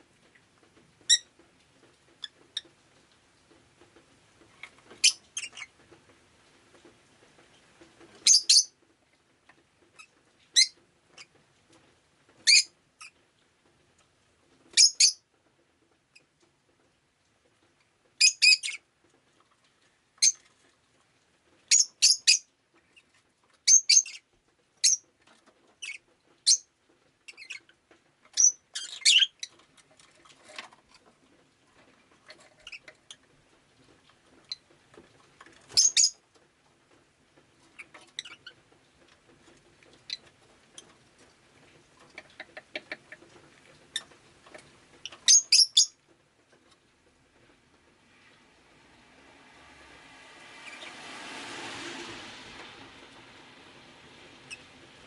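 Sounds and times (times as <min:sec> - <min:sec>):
lovebird chirping: 0:08.2 - 0:08.7, 0:12.5 - 0:13.1, 0:14.8 - 0:15.2, 0:21.7 - 0:22.5, 0:23.7 - 0:24.2, 0:35.7 - 0:36.2, 0:45.0 - 0:46.0.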